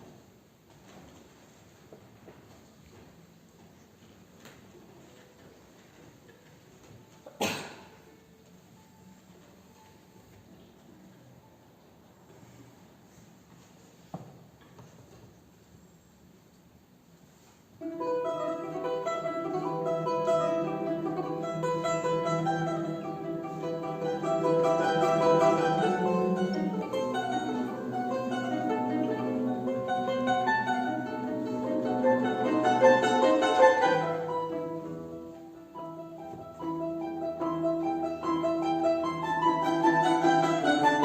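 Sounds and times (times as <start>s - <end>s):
plucked string instruments: 17.8s - 41.0s.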